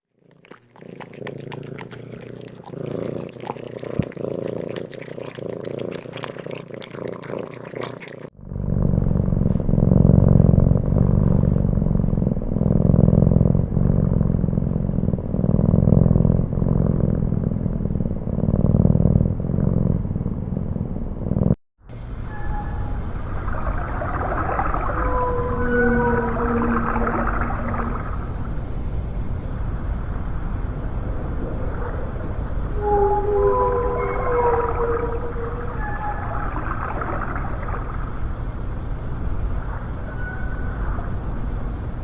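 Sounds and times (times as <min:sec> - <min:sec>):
cat purring: 0:00.8 - 0:07.6.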